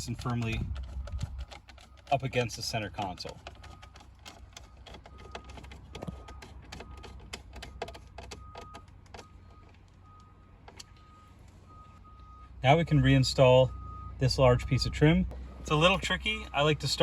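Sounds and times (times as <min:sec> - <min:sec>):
tool clicking: 0:00.0 - 0:09.2.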